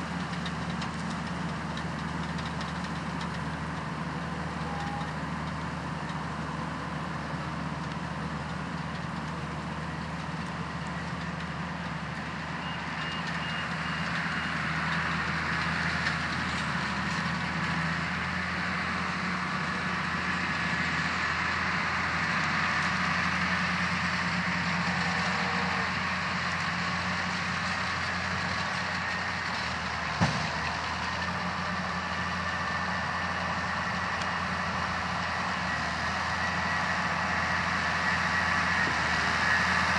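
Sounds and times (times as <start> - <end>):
farm machinery engine running: 0.0 - 39.9.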